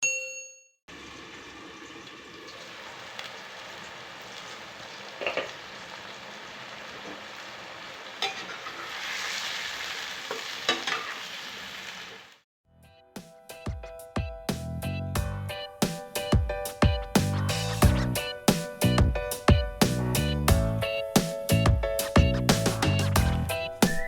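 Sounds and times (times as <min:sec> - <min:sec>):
food sizzling in oil: 0:00.9 - 0:12.4.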